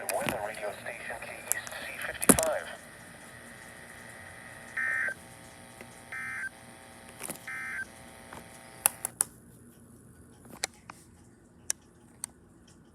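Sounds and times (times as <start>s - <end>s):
buzzy data bursts: 0.0s - 9.1s
broadcast hiss: 0.0s - 9.2s
sharp clicks: 1.2s - 2.7s, 5.8s - 9.3s.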